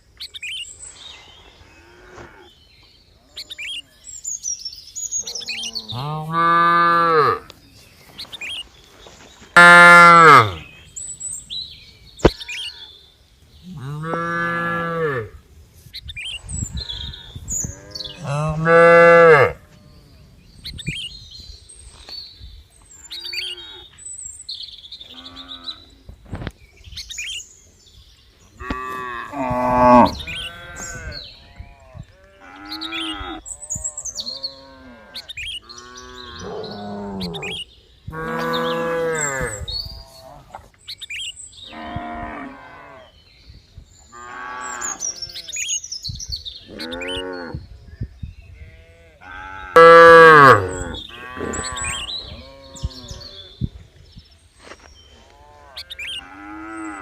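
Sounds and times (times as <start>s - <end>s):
small birds chirping: 0.0s - 15.1s, 15.8s - 57.0s
cattle mooing: 49.0s - 52.8s.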